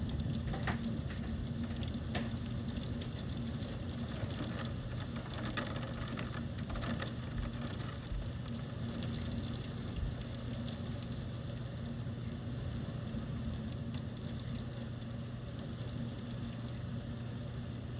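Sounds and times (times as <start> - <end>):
heavy rain: 0.0 - 11.6.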